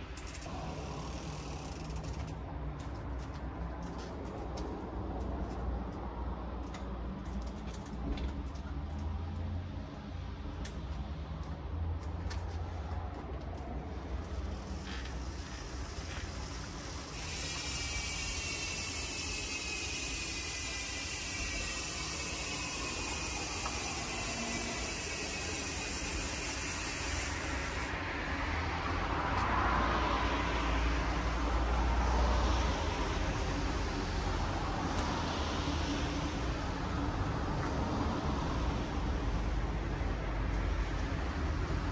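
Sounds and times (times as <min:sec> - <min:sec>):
bike hub ratchet buzzing: 0:00.0 - 0:02.4, 0:14.2 - 0:27.9.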